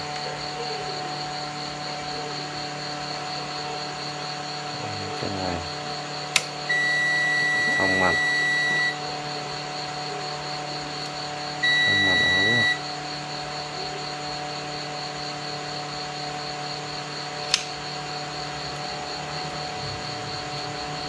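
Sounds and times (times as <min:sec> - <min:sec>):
sharp click: 0:06.3 - 0:06.6, 0:17.4 - 0:17.8
multimeter continuity beep: 0:06.4 - 0:13.2.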